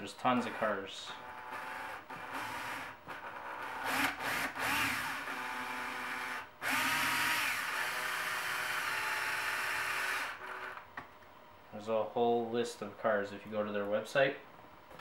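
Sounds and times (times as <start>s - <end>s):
electric drill driving screws: 1.4s - 3.0s, 3.6s - 10.8s.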